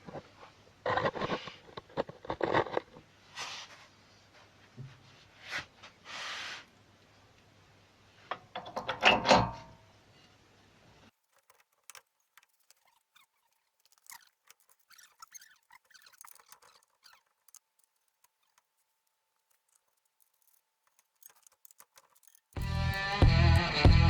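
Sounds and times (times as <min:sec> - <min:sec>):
hand tools clicking and tapping: 0:11.3 - 0:24.0
guitar music: 0:22.6 - 0:24.0.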